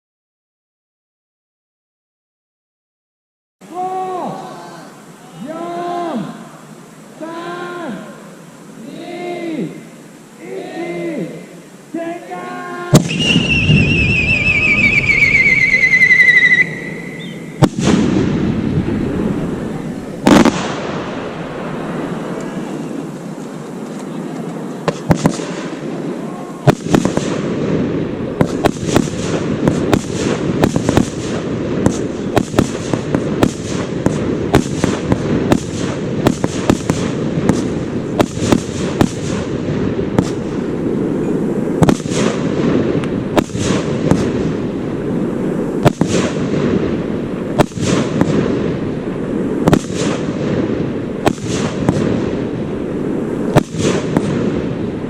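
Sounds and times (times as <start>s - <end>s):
fireworks bangs and crackles: 12.8s - 55.0s.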